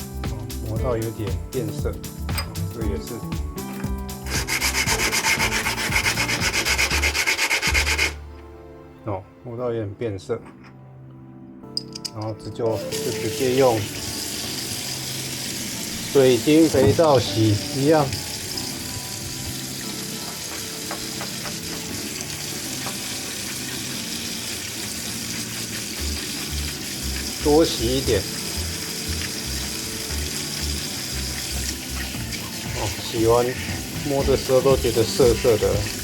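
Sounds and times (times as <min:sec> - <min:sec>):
running water hiss: 0:02.6 - 0:08.2, 0:12.7 - 0:36.0
brake pad rasping on sandpaper: 0:03.7 - 0:08.2.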